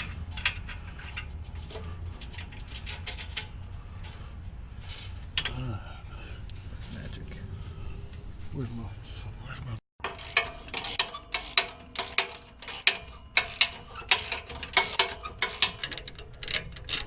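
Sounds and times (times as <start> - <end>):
ratchet wrench clicking: 10.0 - 17.0.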